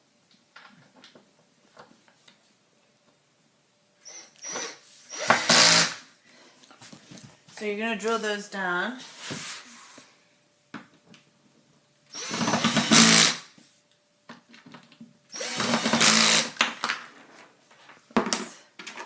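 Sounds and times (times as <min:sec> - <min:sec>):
power drill driving screws: 0:04.0 - 0:06.0, 0:12.1 - 0:13.4, 0:15.3 - 0:16.6.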